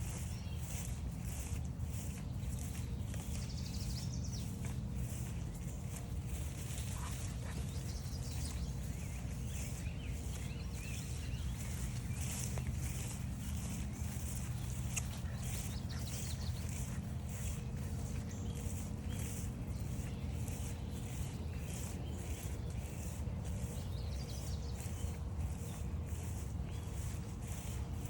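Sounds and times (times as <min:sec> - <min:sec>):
footsteps crunching on trail: 0:00.0 - 0:28.0.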